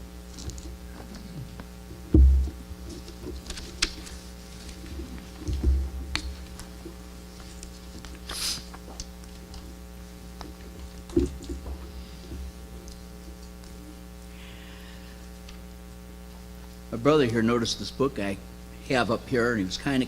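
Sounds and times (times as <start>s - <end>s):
electrical mains hum: 0.0s - 20.0s
low thumps: 1.3s - 3.4s, 4.8s - 7.1s
brief hiss: 8.2s - 8.7s.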